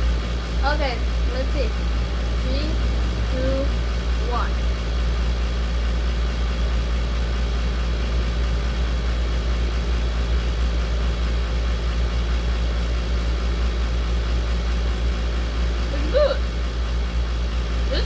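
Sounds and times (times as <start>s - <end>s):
loud low mechanical drone: 0.0s - 18.0s.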